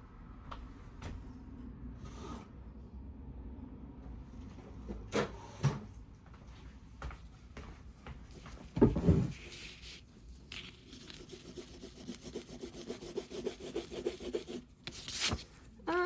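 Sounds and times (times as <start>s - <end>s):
thump: 8.7s - 9.4s
eraser rubbing on paper: 9.2s - 15.4s.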